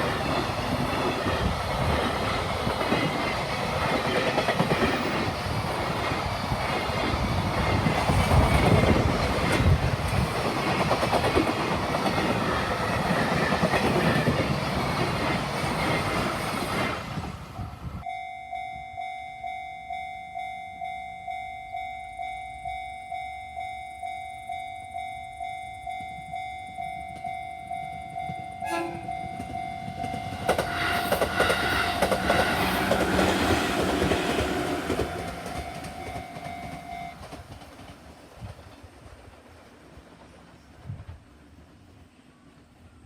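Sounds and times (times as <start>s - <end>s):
level crossing bell dinging: 18.0s - 30.4s
train wheels clattering: 28.0s - 41.3s.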